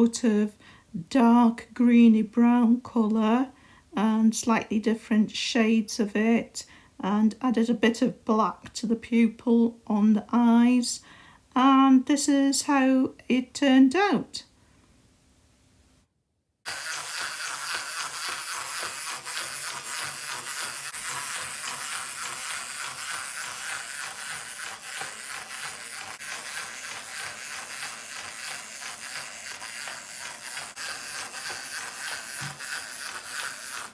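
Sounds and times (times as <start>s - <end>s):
clockwork toy motor whirring: 16.7s - 33.9s.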